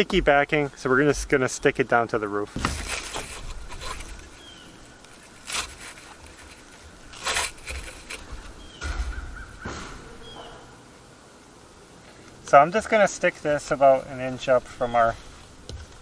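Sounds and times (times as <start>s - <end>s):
low outdoor background: 0.0s - 16.0s
harsh bird calls: 8.2s - 10.9s.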